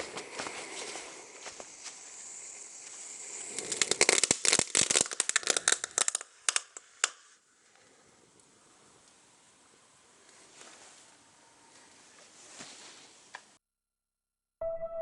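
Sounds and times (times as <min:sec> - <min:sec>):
sharp crackling pops: 0:00.0 - 0:07.4
burning matches hissing: 0:00.0 - 0:09.4.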